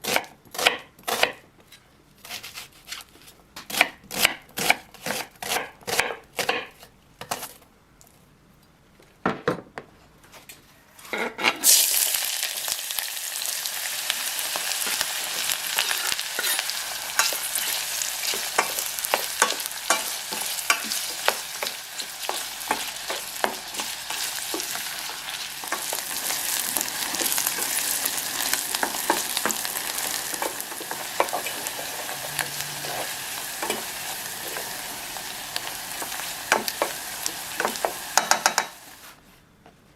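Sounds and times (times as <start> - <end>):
knife chopping on cutting board: 3.6 - 6.7
food sizzling in hot oil: 11.6 - 39.1.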